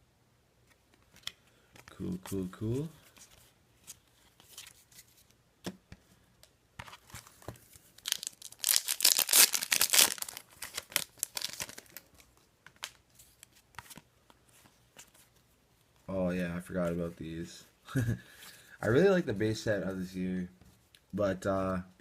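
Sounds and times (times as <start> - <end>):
wrapper tearing and crinkling: 8.0 - 12.2.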